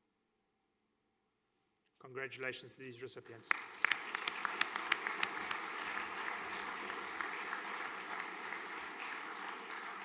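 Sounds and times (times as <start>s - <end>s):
audience applauding: 3.5s - 10.0s.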